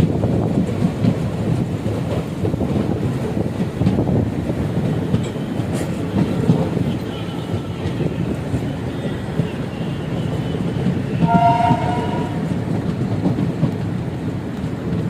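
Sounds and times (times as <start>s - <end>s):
train running noise: 0.0s - 15.0s
wheels clacking over rail joints: 0.0s - 15.0s
two-tone locomotive horn: 6.6s - 12.6s.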